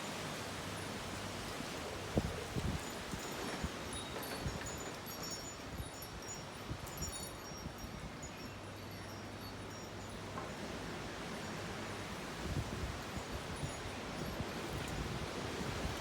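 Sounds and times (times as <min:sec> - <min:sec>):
wind chimes tinkling: 0:02.6 - 0:12.2, 0:12.8 - 0:15.9.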